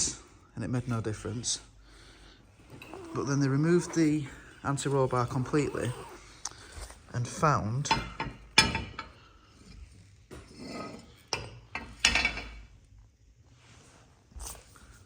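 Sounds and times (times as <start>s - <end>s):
metal bar clinking and knocking: 7.8s - 9.2s, 11.3s - 12.6s.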